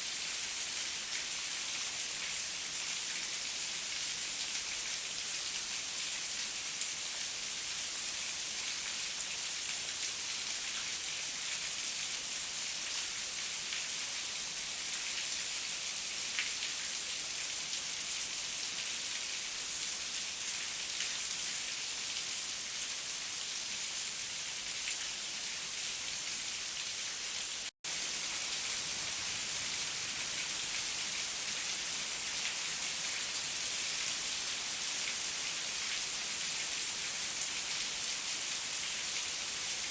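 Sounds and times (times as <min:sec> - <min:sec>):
heavy rain: 0:27.9 - 0:39.9.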